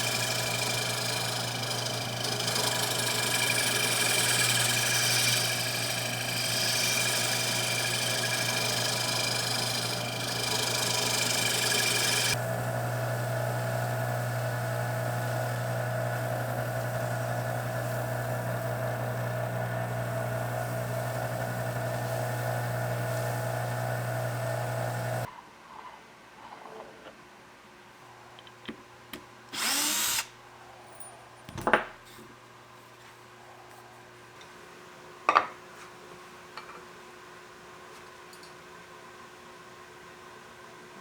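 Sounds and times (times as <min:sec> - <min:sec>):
wood lathe motor hum and whine: 0:00.0 - 0:25.3, 0:29.6 - 0:30.3.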